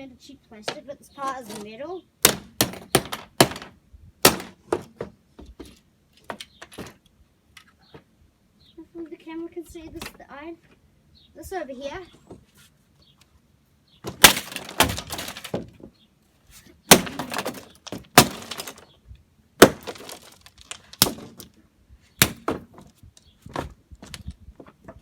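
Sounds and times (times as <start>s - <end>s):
breaking plastic pieces clattering: 2.2s - 3.7s, 4.3s - 4.9s, 14.1s - 15.8s, 16.9s - 18.9s, 19.6s - 21.6s
plastic casing smashed with blows: 2.2s - 5.1s, 14.0s - 15.9s, 16.8s - 18.9s, 19.6s - 21.6s, 22.2s - 22.9s.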